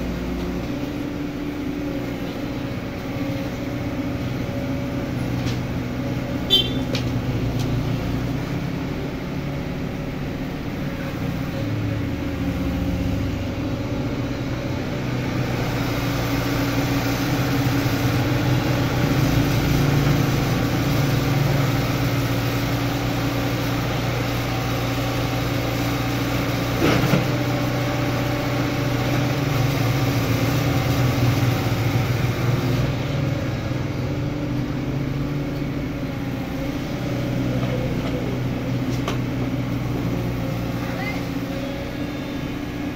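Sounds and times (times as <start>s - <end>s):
excavator diesel engine running: 0.0s - 42.9s.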